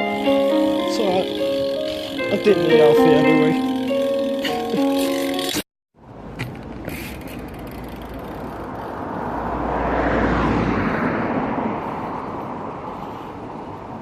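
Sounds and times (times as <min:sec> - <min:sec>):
vehicle passing by: 0:07.3 - 0:14.0.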